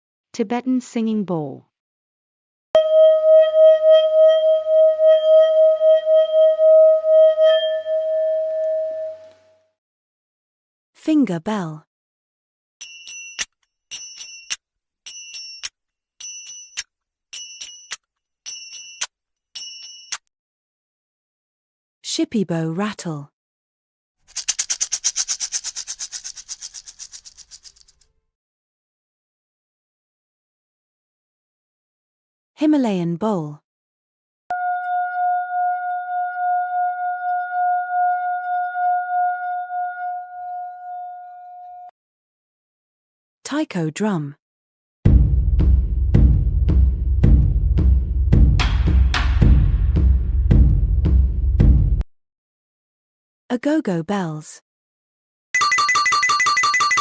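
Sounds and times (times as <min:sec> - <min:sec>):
singing bowl ringing: 0:02.8 - 0:09.3, 0:34.5 - 0:41.9
finger bell dings: 0:12.8 - 0:16.8, 0:17.4 - 0:20.2.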